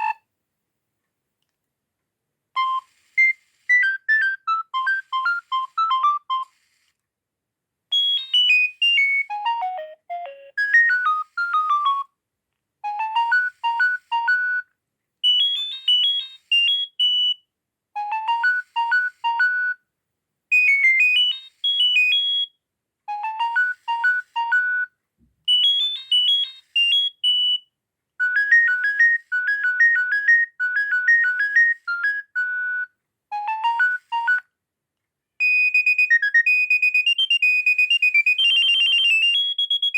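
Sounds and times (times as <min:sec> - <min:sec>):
mobile phone ringtone melody: 0:07.9 - 0:12.1, 0:12.9 - 0:14.6, 0:15.3 - 0:17.4, 0:20.5 - 0:22.5, 0:25.5 - 0:27.6, 0:35.4 - 0:39.9.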